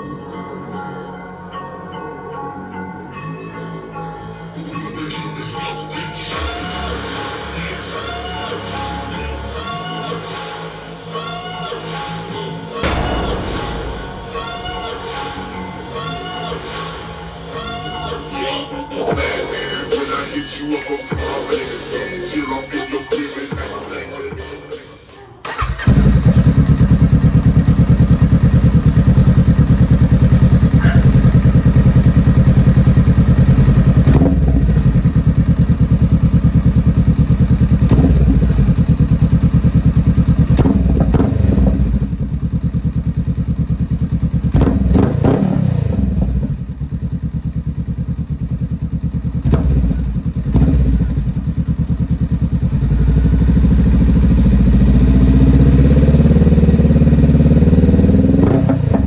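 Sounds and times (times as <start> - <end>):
motorcycle engine idling and revving: 12.8 - 14.2, 25.5 - 59.0.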